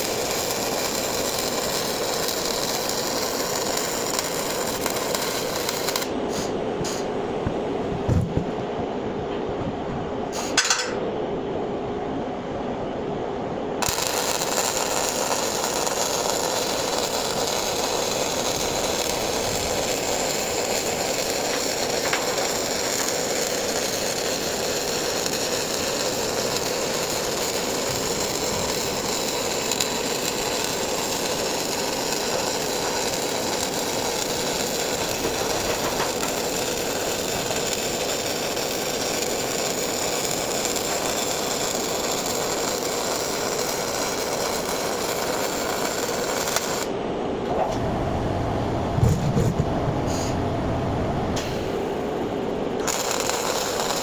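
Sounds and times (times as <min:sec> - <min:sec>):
welding arc: 0:00.0 - 0:07.1, 0:13.8 - 0:46.9, 0:51.4 - 0:54.0.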